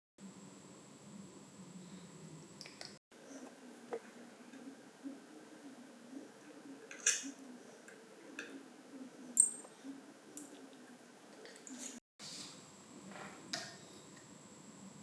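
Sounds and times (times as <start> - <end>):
metal tools clicking and tapping: 6.9 - 8.6, 9.4 - 9.8
metallic ring: 9.4 - 9.7.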